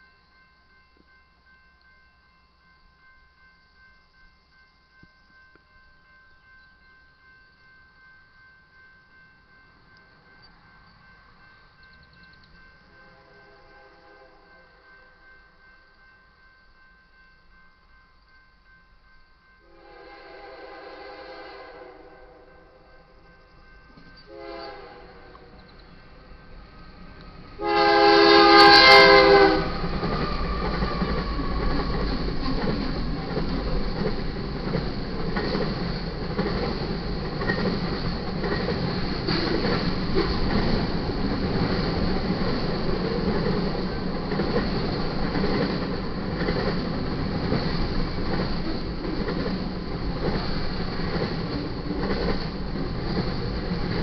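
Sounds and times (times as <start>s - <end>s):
train rumbling past: 0.0s - 54.0s
locomotive air horn blast: 19.6s - 22.4s, 24.3s - 25.6s, 27.6s - 29.8s
wheels clicking over rail joints: 28.4s - 54.0s.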